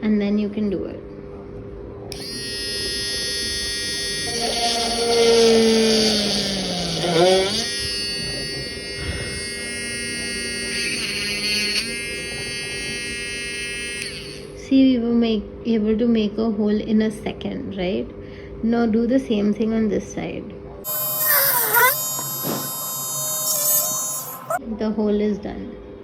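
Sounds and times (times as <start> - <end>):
electric hand drill whining: 2.1 - 14.6, 20.9 - 24.6.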